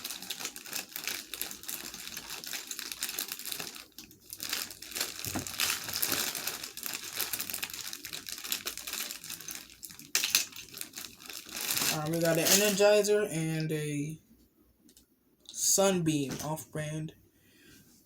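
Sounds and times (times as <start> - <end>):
rummaging through batteries and wires: 0.0 - 12.9.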